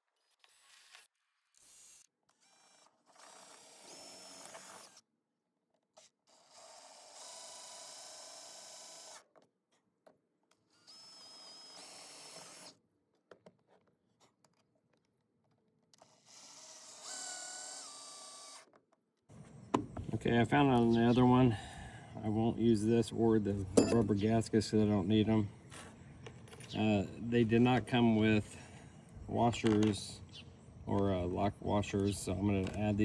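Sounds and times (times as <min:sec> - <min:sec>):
power drill whining: 0:10.8 - 0:12.7, 0:16.1 - 0:18.7, 0:19.3 - 0:33.0.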